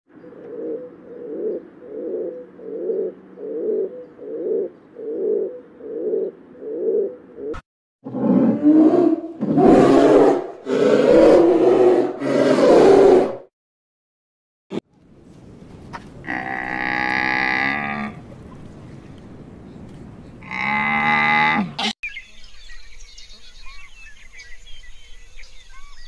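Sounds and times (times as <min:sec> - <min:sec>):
low animal call: 0:15.9 - 0:18.4, 0:20.4 - 0:22.0.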